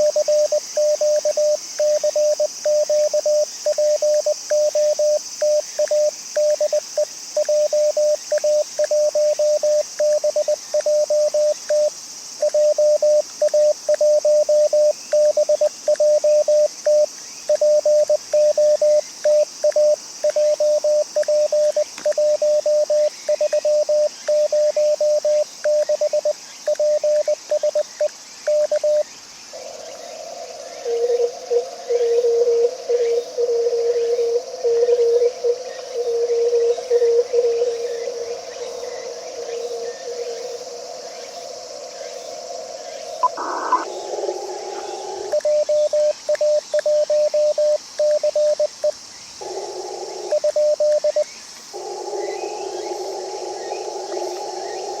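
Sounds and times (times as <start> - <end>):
morse code tone: 43.2 - 43.8.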